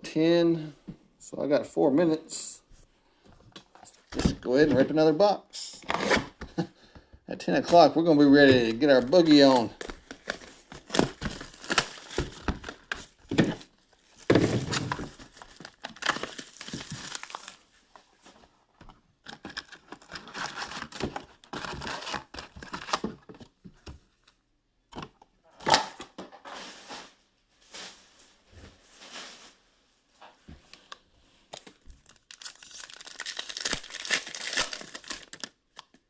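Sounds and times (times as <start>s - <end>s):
wrappers tearing and crinkling: 8.9s - 13.2s, 14.0s - 17.6s, 19.4s - 23.0s, 31.6s - 36.0s.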